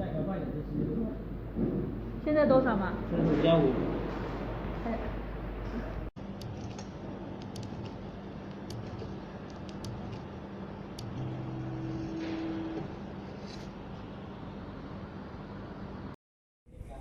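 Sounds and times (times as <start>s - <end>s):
machine hum: 0.0s - 16.2s
motor whine: 5.4s - 16.0s.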